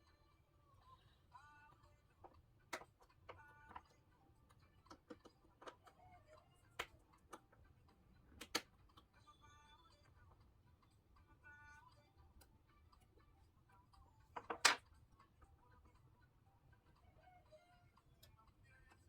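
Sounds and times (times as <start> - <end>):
small tools clicking and tapping: 2.2 - 6.0, 14.3 - 15.0.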